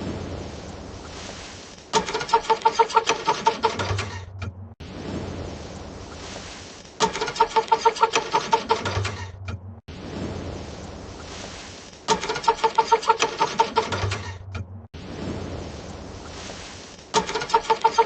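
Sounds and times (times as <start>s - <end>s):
car starter cranking engine: 2.0s - 4.4s, 7.0s - 9.5s, 12.1s - 14.5s, 17.2s - 18.0s.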